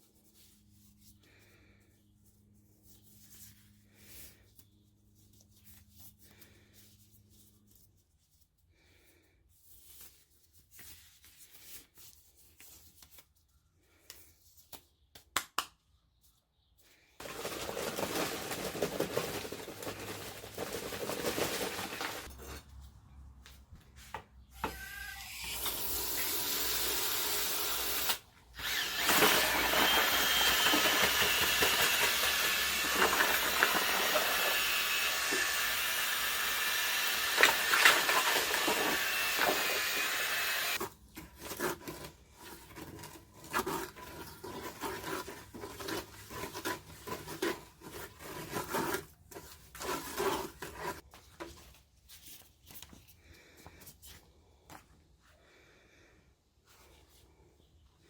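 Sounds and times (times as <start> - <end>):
power tool running: 24.6 - 40.8.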